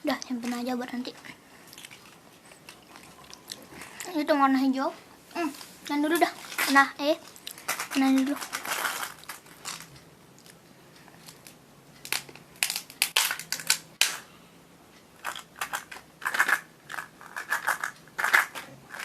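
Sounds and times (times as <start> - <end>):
plastic packaging crackling: 5.5 - 10.0, 11.3 - 14.2.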